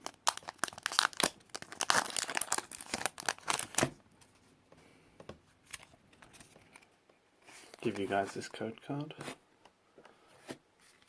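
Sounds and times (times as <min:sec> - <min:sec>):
foil wrapper tearing and crinkling: 0:00.0 - 0:03.9.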